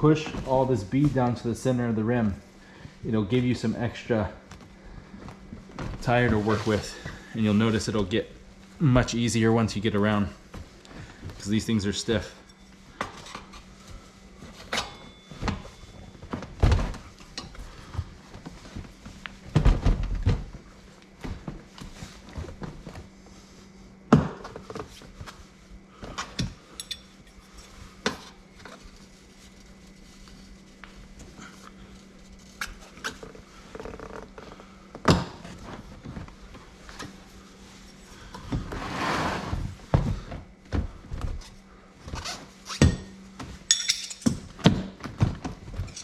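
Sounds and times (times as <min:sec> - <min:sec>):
tire rubber scraping over rim: 0:38.6 - 0:39.8.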